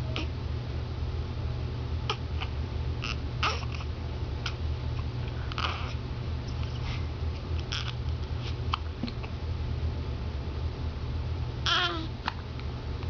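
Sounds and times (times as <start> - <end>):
steady low hum: 0.0 - 13.0
baby babbling: 0.1 - 0.3, 2.1 - 3.9, 5.6 - 6.0, 7.7 - 8.0, 11.6 - 12.1.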